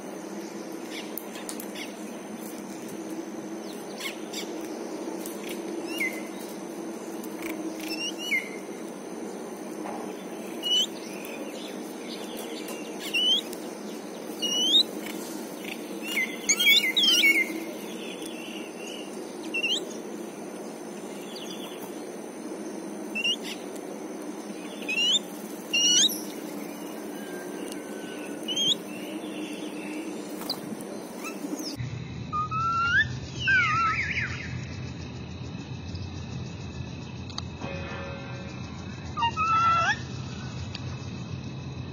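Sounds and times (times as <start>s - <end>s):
steady low hum: 0.0s - 41.9s
birds' longer sliding calls: 5.4s - 31.8s, 39.2s - 40.5s
babblers chirping: 10.6s - 13.5s, 31.2s - 34.6s, 39.1s - 40.1s.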